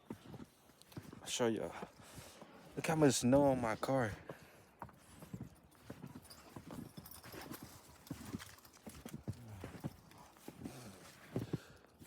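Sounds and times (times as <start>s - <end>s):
footsteps crunching in snow: 4.9s - 12.0s.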